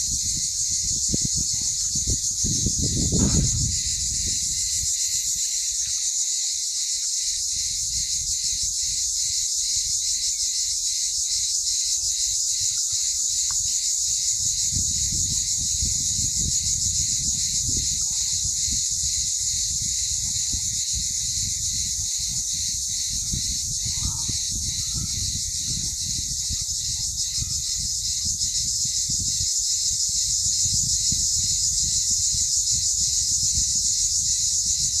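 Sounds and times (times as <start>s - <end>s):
wind rumbling on microphone: 0.0s - 6.2s, 6.8s - 35.0s
insects trilling: 0.0s - 35.0s.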